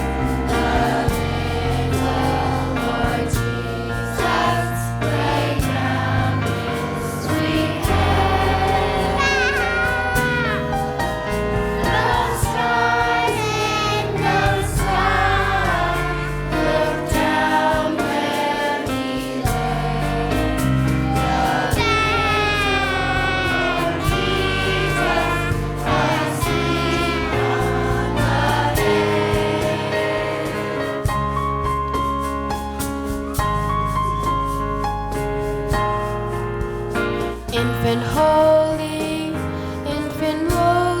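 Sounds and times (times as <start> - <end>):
choir singing: 0.0 - 31.4
sustained low notes: 0.0 - 31.9
instrumental accompaniment: 0.0 - 41.0.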